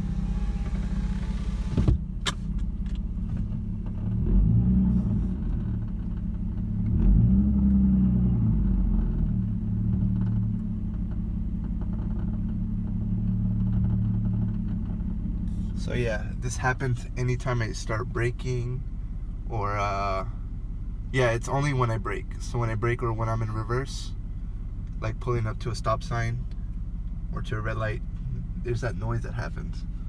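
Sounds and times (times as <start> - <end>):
power window humming: 0.0 - 2.4
engine bay clicking: 0.0 - 4.2
car engine rumbling: 0.0 - 30.0.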